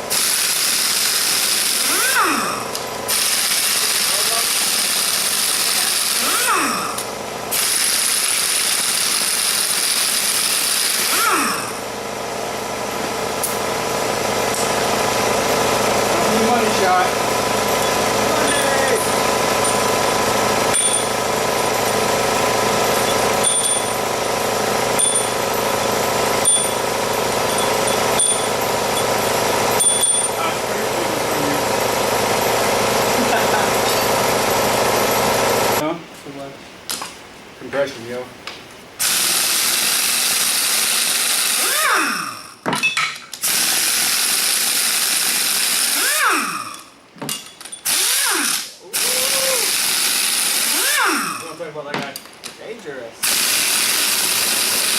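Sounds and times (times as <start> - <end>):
power tool whining: 0.0 - 35.8, 39.0 - 42.6, 43.4 - 47.0, 47.6 - 51.7, 53.2 - 54.9
machine humming: 0.0 - 36.0.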